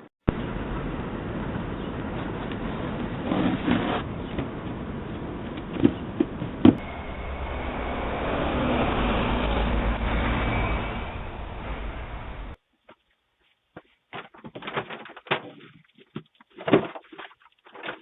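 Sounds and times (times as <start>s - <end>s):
vehicle passing rumble: 0.3s - 12.6s.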